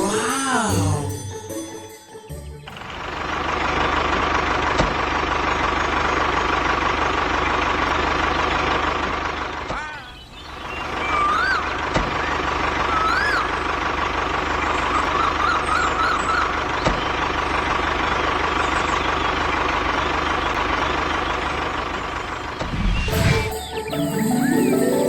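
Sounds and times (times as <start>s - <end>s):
engine running: 0.0s - 25.0s
warbling whistle-like tones: 22.6s - 25.0s.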